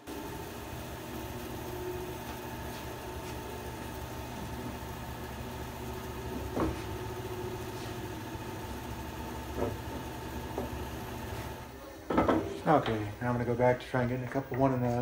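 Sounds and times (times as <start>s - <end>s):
bandsaw humming: 0.0s - 11.7s.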